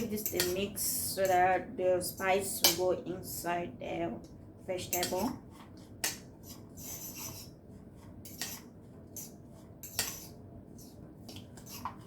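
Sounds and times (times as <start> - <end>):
fork clinking and scraping bowl: 0.0 - 1.4, 4.9 - 5.3, 6.0 - 7.6, 8.2 - 12.0.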